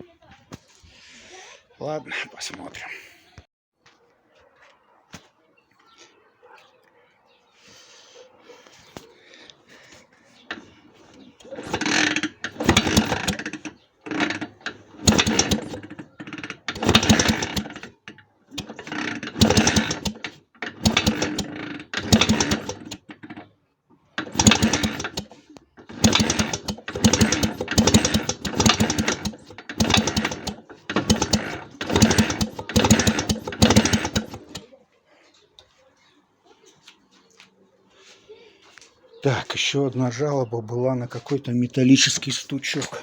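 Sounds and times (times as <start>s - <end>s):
rapid mechanical clicking: 11.4s - 23.4s, 24.2s - 34.6s.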